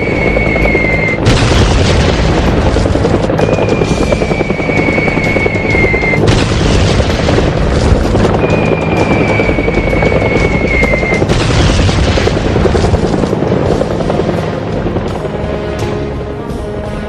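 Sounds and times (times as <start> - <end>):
loud heavy background music: 12.3 - 17.0.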